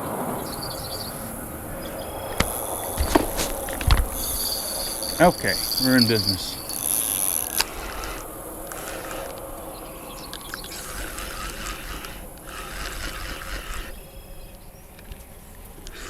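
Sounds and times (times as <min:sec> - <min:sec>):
fishing reel clicking and whirring: 0:02.3 - 0:14.0.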